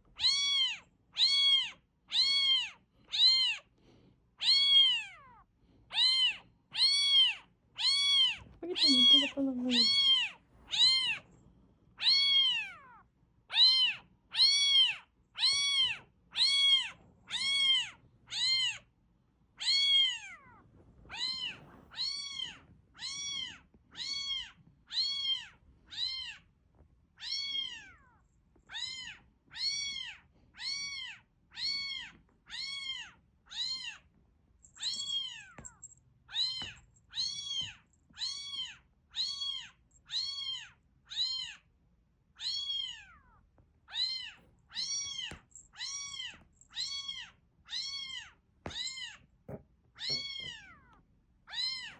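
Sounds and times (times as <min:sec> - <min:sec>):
recorded cat meowing: 0:00.1 - 0:03.7, 0:04.4 - 0:11.3, 0:12.0 - 0:18.9, 0:19.6 - 0:26.4, 0:42.3 - 0:51.9.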